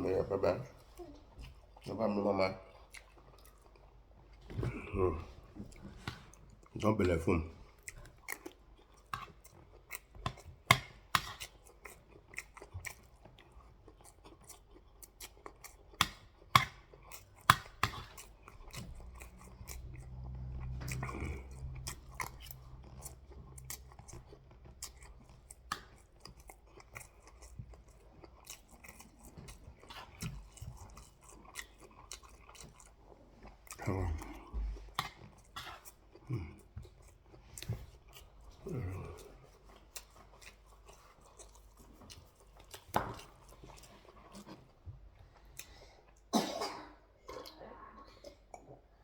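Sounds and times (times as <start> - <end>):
chewing and mouth smacks: 0.6 - 46.3
low steady hum: 18.0 - 25.6.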